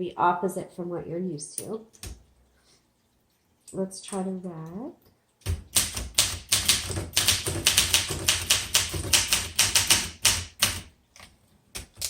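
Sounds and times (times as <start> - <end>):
manual typewriter typing: 5.4 - 12.0.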